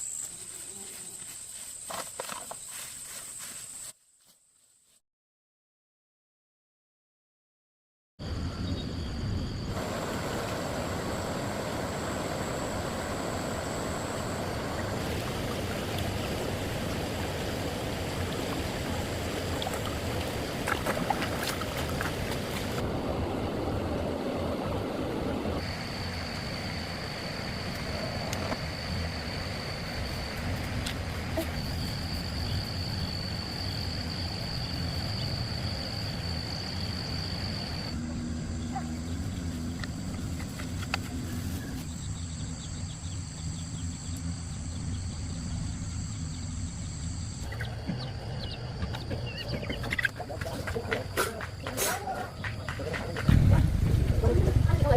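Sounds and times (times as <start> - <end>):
low rushing hiss: 9.7 - 37.6.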